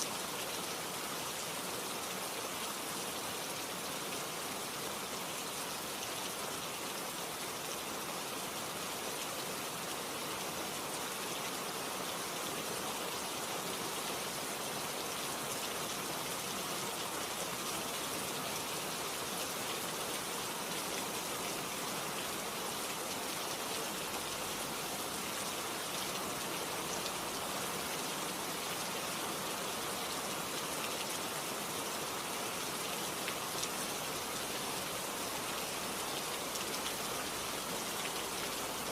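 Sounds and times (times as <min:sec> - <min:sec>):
rain pattering on a surface: 0:08.4 - 0:38.9.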